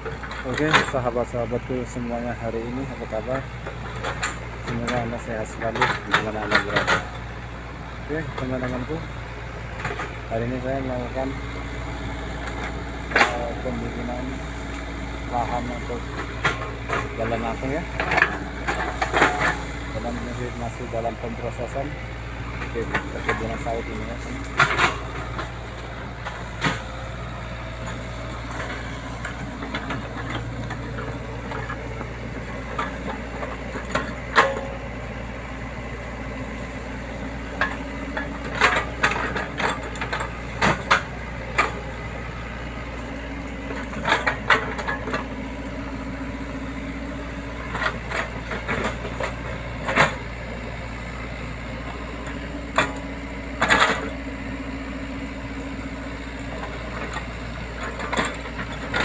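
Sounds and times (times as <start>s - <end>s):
excavator diesel engine running: 0.0s - 59.0s
sharp knocks and rattles: 12.4s - 21.8s, 22.6s - 35.0s, 36.1s - 45.8s.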